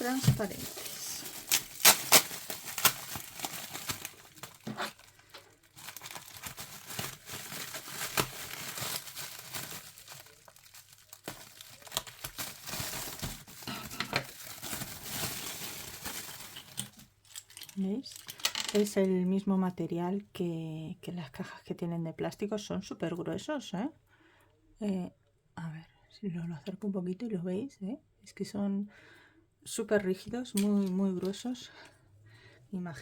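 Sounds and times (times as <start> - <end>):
plastic packaging crinkling: 0.0 - 18.9.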